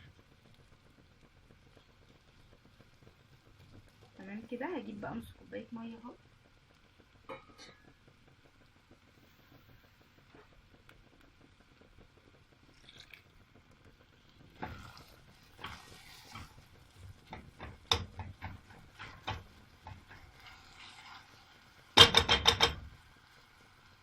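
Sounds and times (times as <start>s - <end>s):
spoon stirring in pot: 14.5s - 23.0s.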